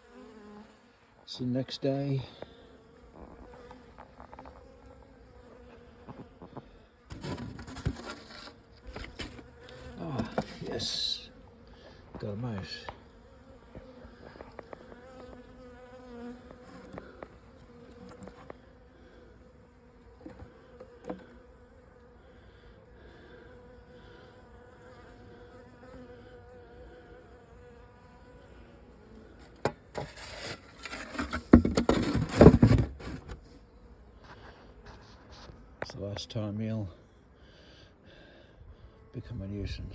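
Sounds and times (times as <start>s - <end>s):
bees buzzing: 8.6s - 30.0s
rustling and knocking: 29.6s - 33.4s.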